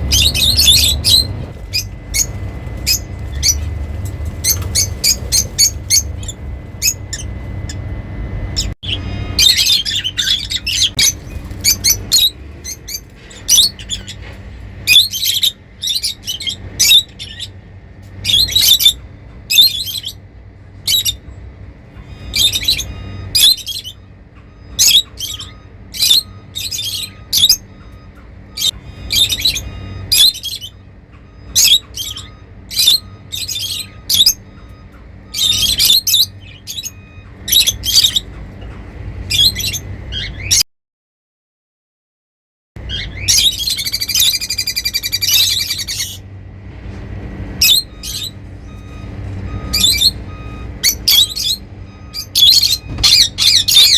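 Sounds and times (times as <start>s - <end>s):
lovebirds chirping and squawking: 0.0s - 40.6s, 42.8s - 53.9s.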